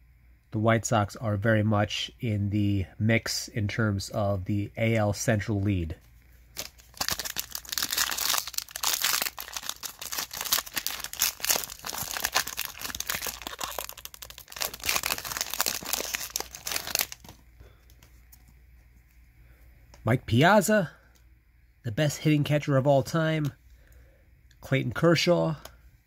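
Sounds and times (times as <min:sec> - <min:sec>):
wrapper crinkling and tearing: 0:06.5 - 0:17.4.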